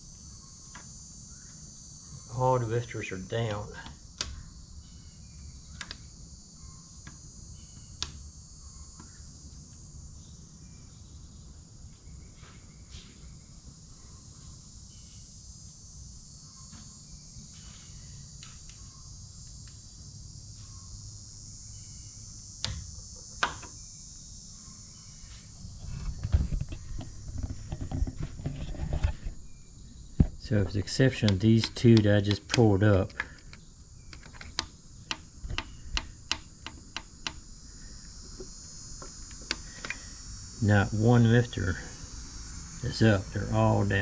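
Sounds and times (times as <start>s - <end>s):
crickets chirping: 0.0s - 44.0s
sharp metallic clicks: 30.7s - 37.4s.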